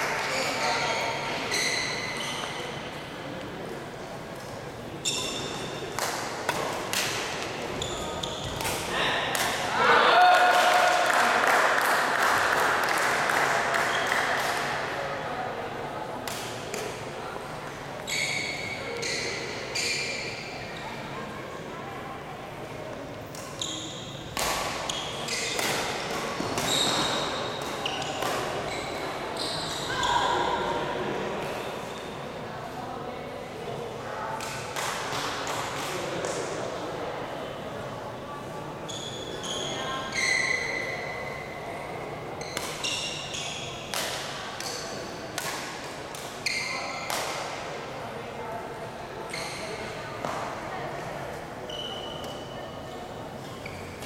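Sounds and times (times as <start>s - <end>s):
sports shoes squeaking on court: 0.3s - 2.8s, 5.0s - 5.8s, 7.7s - 8.7s, 18.0s - 21.0s, 23.4s - 25.8s, 26.4s - 30.2s, 38.9s - 41.5s, 42.4s - 43.9s, 46.4s - 47.1s, 51.7s - 52.8s, 53.4s - 54.0s.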